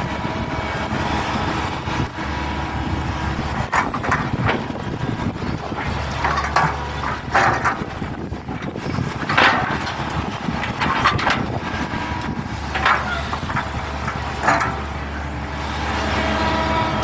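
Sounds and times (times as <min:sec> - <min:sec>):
excavator diesel engine running: 0:00.0 - 0:17.0
harsh digging noises: 0:01.9 - 0:15.4.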